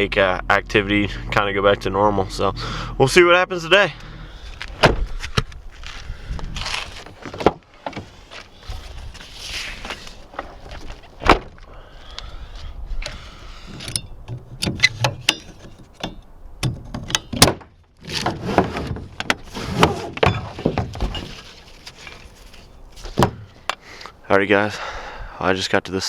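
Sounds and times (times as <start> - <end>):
rustling: 4.0 - 13.9, 18.0 - 24.1.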